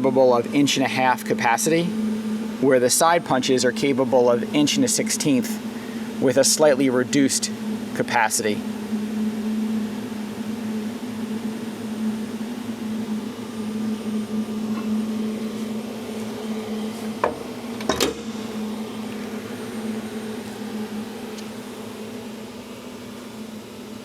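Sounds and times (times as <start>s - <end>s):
hydraulic unit humming: 0.0s - 24.0s.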